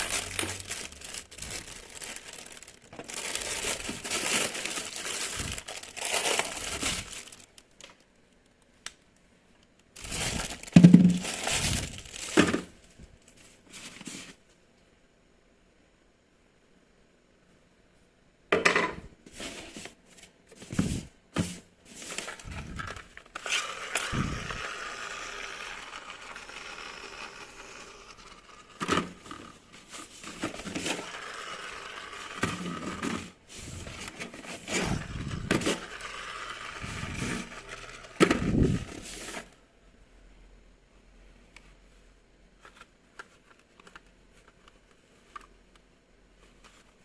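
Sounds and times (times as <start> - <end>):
scraping and rustling handling: 0.0 - 8.0, 9.9 - 14.5, 19.3 - 26.4, 28.1 - 39.6.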